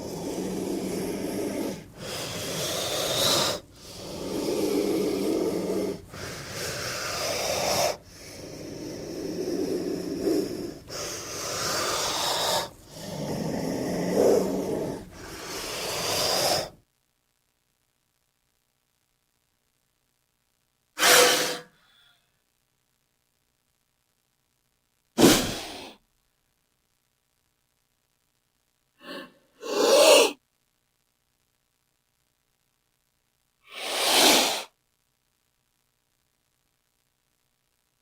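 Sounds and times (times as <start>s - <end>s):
snake hissing: 0.0s - 16.8s, 21.0s - 21.8s, 25.2s - 26.0s, 29.0s - 30.4s, 33.6s - 34.8s.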